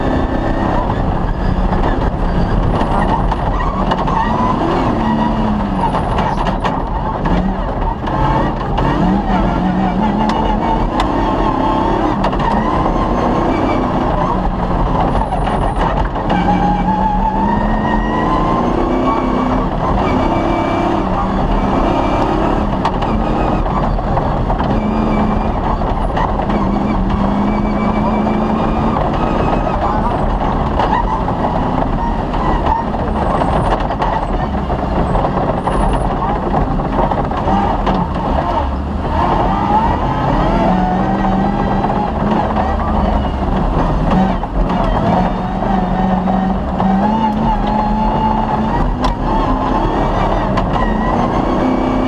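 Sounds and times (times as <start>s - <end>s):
rally car engine running hard: 0.0s - 52.0s
rumble of car on road: 0.0s - 52.0s.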